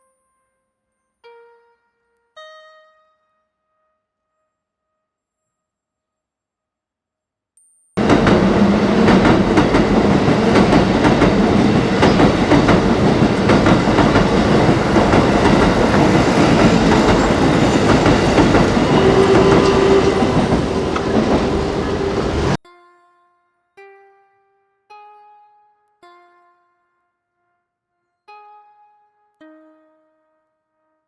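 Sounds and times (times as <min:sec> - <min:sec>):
steady whining tone: 0:08.0 - 0:22.6
train wheels clattering on rails: 0:08.0 - 0:22.6.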